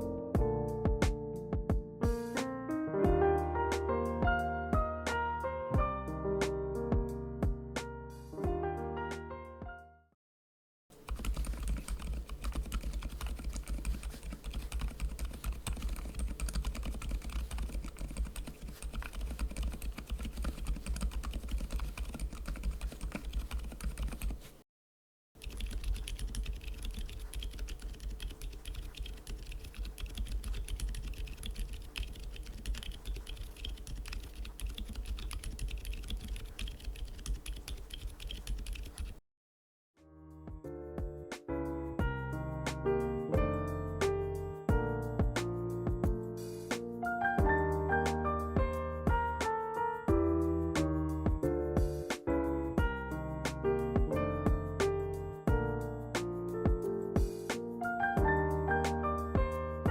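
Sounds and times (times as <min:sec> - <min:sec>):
fast typing on mechanical keyboard: 0:11.0 - 0:24.6, 0:25.4 - 0:39.2.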